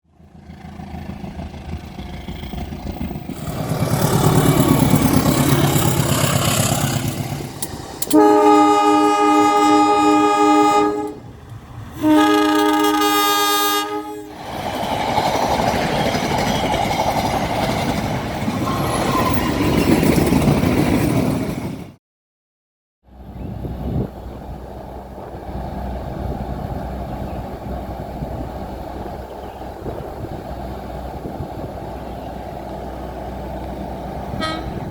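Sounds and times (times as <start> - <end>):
diesel locomotive engine rumble: 0.0 - 22.0, 23.1 - 34.9
rush of train passing: 0.1 - 22.0, 23.1 - 34.9
train air horn: 8.0 - 11.3, 12.0 - 14.4, 34.3 - 34.9.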